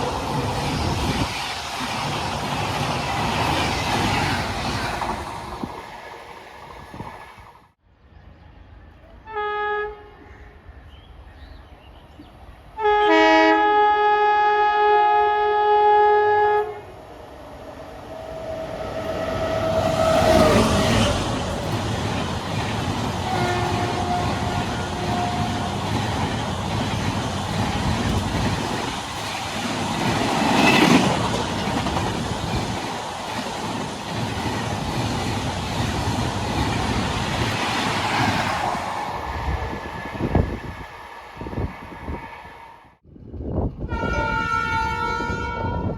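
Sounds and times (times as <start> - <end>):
train wheels rumbling on rails: 0.0 - 7.8, 17.0 - 45.9
train horn: 9.2 - 10.4, 12.8 - 16.9, 23.0 - 26.4, 43.8 - 45.9.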